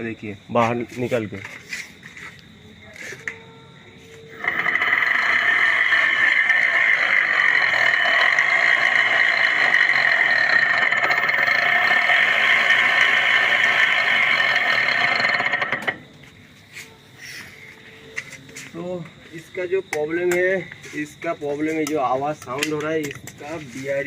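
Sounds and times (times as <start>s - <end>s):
electric motor whirring: 4.3s - 16.1s.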